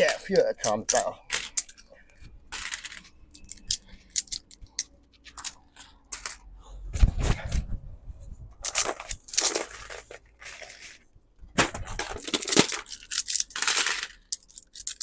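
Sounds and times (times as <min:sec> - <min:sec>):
heavy coin clatter: 0:00.0 - 0:01.8, 0:02.5 - 0:04.6, 0:08.6 - 0:11.0, 0:11.6 - 0:15.0
coins clinking onto magnet: 0:02.5 - 0:06.4, 0:11.8 - 0:15.0.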